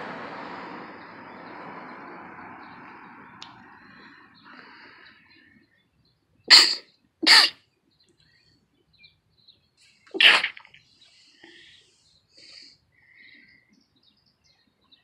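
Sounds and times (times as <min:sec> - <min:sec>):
person sneezing: 0:06.5 - 0:07.5, 0:10.2 - 0:10.6.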